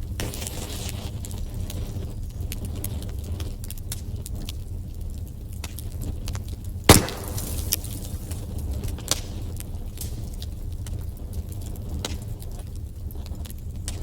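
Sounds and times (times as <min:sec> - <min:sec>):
low rumble of flames: 0:00.0 - 0:14.0
wood fire crackling: 0:03.2 - 0:14.0
loud wood pop: 0:06.9 - 0:08.1.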